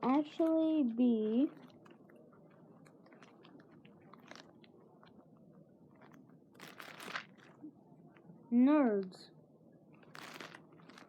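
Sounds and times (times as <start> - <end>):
candy being chewed: 1.2 - 8.2, 9.9 - 11.0
noisy rustle: 5.9 - 7.7, 9.9 - 11.0.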